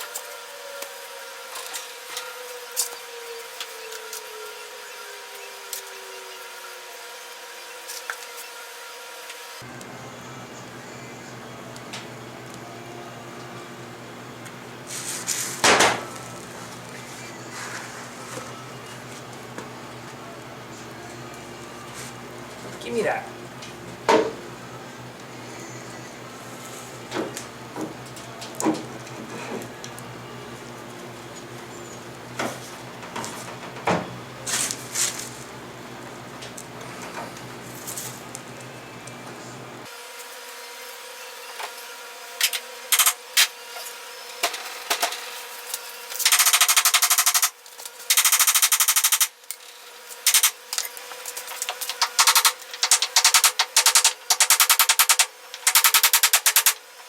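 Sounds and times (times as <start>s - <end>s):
air impact wrench rattling: 46.2s - 47.5s, 52.0s - 56.8s.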